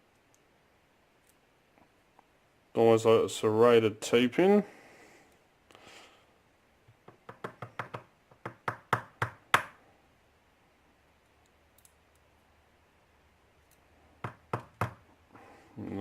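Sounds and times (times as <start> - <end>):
lock knocking on hard surface: 7.0 - 9.7.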